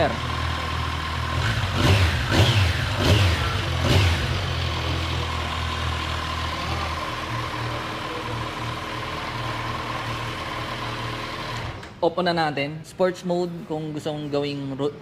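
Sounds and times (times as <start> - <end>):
motorcycle engine revving: 0.0 - 11.9.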